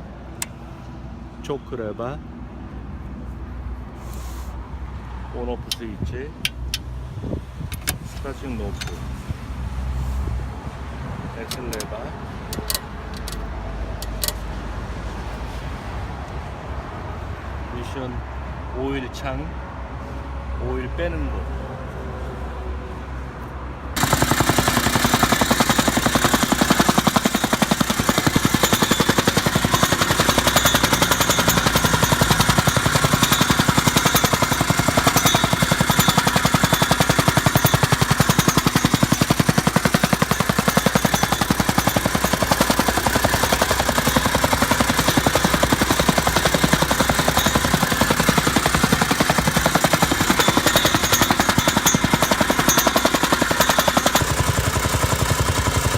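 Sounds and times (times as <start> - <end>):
tamping rammer pounding: 24.0 - 55.9.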